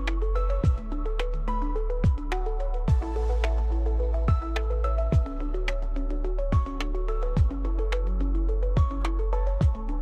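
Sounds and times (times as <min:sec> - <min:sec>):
steady low bass: 0:00.0 - 0:10.0
deep kick drum: 0:00.6 - 0:00.9, 0:02.0 - 0:02.3, 0:02.9 - 0:03.2, 0:04.3 - 0:05.4, 0:06.6 - 0:06.8, 0:07.4 - 0:07.6, 0:08.8 - 0:09.9.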